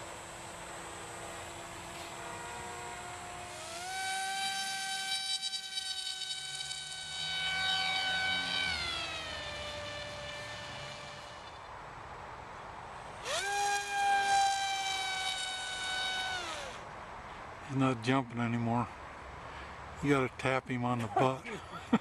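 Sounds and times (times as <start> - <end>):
electric motor and propeller whining: 0.0 - 11.7, 13.1 - 16.8.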